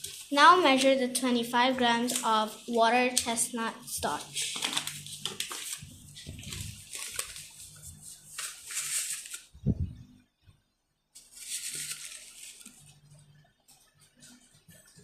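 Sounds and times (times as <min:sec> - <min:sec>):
packet rustling: 0:04.0 - 0:09.5, 0:11.2 - 0:12.9.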